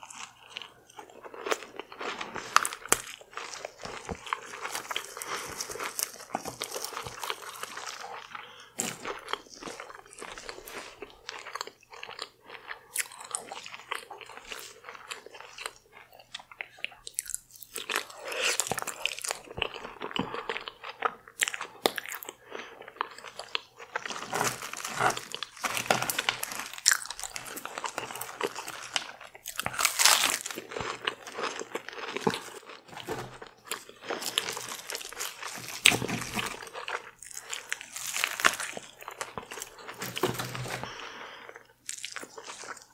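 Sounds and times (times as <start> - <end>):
person chewing crunchy food: 0.0 - 42.9.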